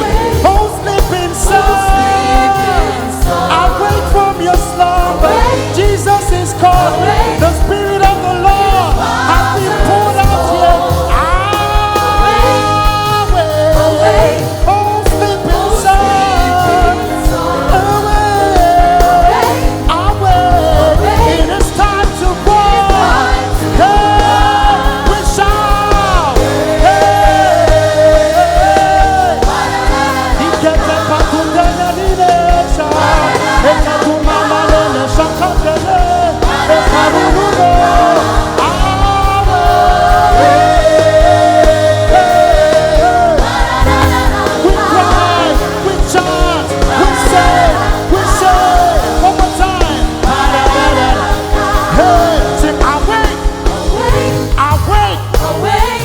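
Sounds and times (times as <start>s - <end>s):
gospel band playing: 0.0s - 56.0s
sliding wordless vocals: 0.0s - 56.0s.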